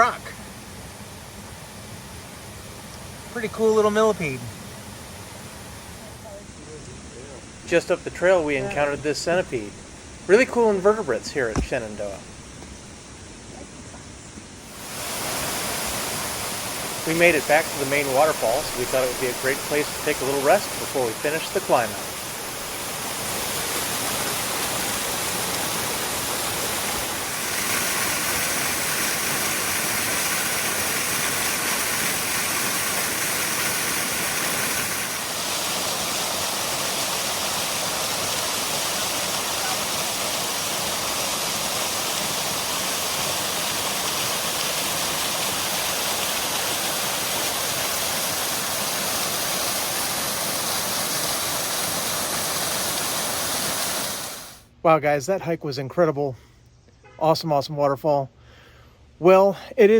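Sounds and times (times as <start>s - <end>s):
waterfall rushing: 0.0s - 0.5s, 14.6s - 54.6s.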